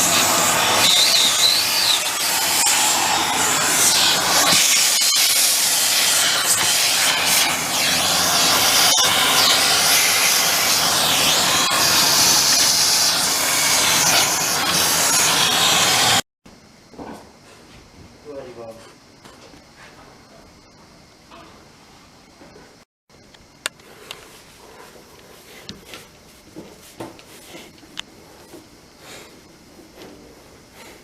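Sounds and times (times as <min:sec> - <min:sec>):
spraying hiss: 0:00.0 - 0:16.2.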